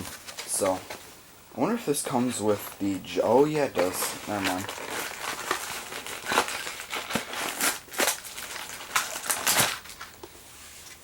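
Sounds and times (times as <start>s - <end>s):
packaging crinkling and rustling: 2.0s - 10.4s.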